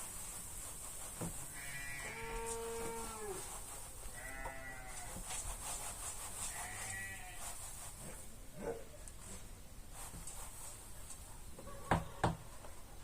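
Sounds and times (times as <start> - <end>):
sheep bleating: 4.2 - 5.1.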